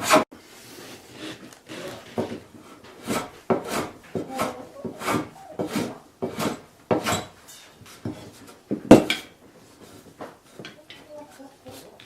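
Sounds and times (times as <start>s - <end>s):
hand tool shaving wood: 0.0s - 8.8s.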